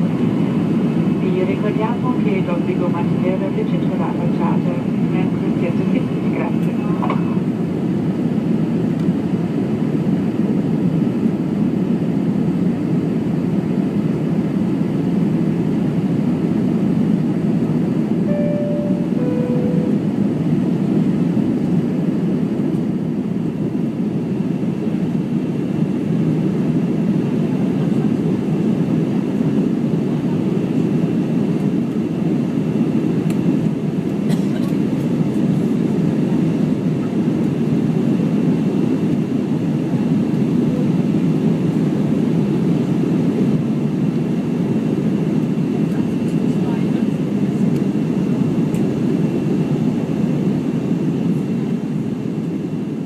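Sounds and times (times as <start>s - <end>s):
airliner cabin engine rumble: 0.0s - 53.0s
faint high whine: 18.2s - 20.4s.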